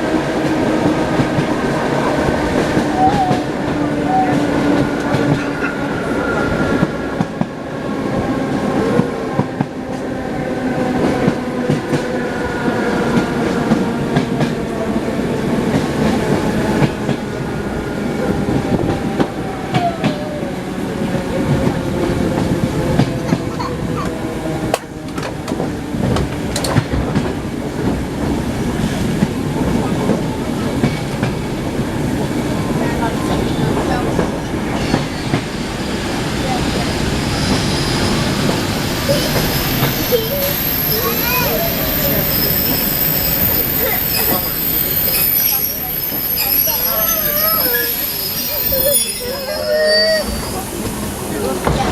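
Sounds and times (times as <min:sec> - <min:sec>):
electric train whine: 0:30.1 - 0:51.9.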